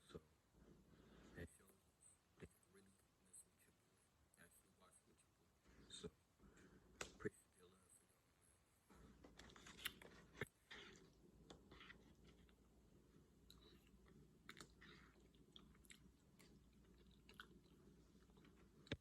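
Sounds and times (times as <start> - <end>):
chewing mouth sounds: 13.4 - 19.0.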